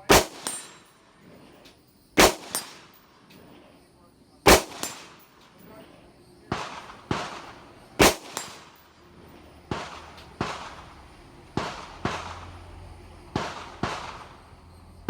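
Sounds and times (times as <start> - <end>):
rifle shots: 0.0 - 1.0, 2.2 - 3.2, 4.4 - 5.6, 6.5 - 14.6.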